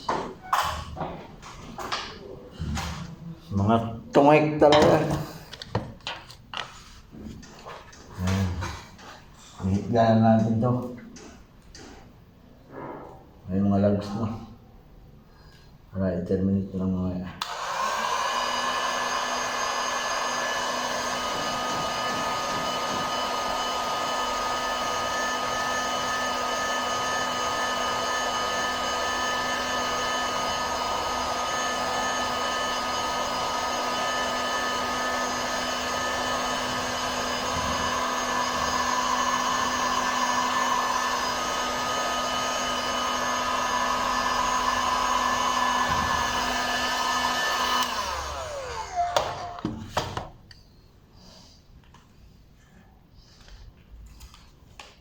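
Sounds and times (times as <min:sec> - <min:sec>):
electric motor humming and whining: 0:17.4 - 0:49.8.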